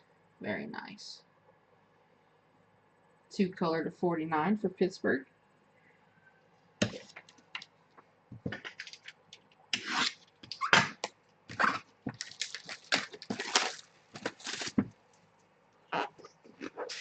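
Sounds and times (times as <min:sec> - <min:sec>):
trading cards and plastic rustling: 0:08.4 - 0:09.4, 0:12.1 - 0:14.9.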